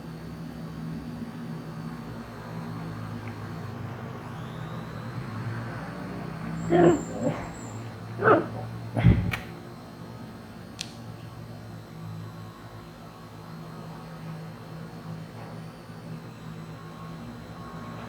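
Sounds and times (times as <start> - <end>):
short pitched animal-like calls: 6.6 - 9.4.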